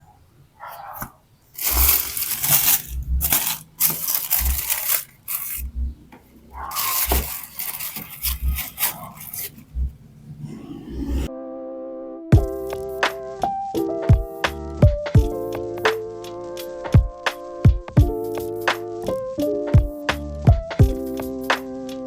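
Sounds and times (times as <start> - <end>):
packaging rustling and crinkling: 1.5 - 5.7, 6.6 - 9.7
low handling bumps: 1.6 - 11.3.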